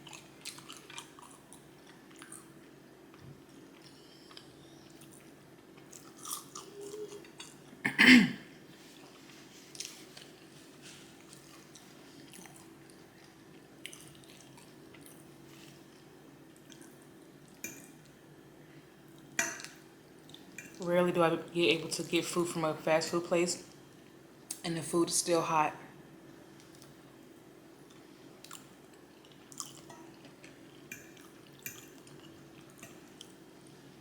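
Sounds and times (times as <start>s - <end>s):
chewing and crunching food: 0.0s - 7.8s, 8.7s - 18.2s, 19.0s - 20.8s, 26.6s - 27.2s, 27.8s - 34.0s.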